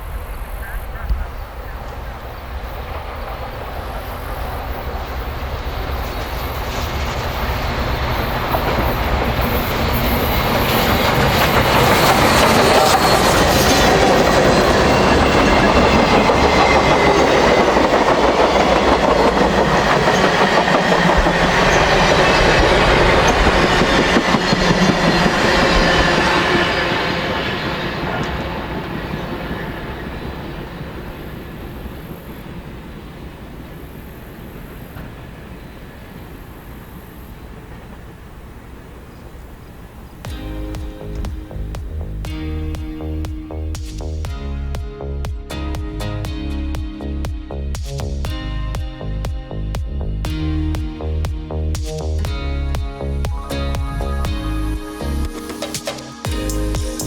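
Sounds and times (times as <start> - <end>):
train wheels clacking over rails: 1.8 - 34.0.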